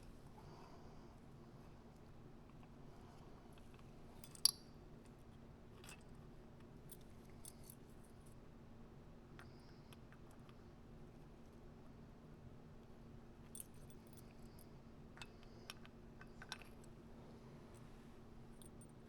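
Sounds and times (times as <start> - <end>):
faint steady hum: 0.0 - 19.0
small parts clicking and tapping: 3.6 - 4.7, 13.4 - 17.0.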